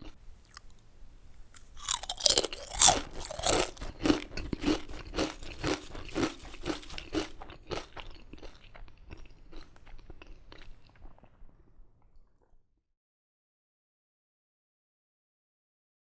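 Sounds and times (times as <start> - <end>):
chewing crisps crunching: 0.4 - 0.8, 1.5 - 11.4.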